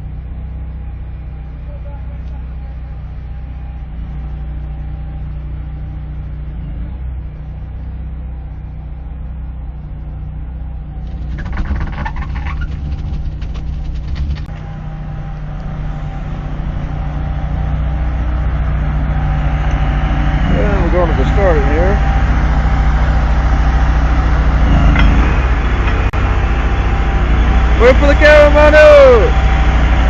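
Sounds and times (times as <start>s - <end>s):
machine engine running: 10.8s - 30.0s
rapid clattering: 11.1s - 14.5s.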